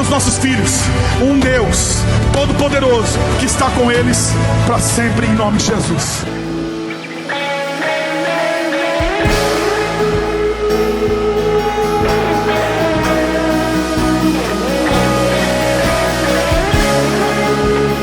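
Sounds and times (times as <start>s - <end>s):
bass: 0.0s - 7.4s, 9.0s - 18.0s
electric guitar: 0.0s - 18.0s
drum kit: 6.3s - 18.0s.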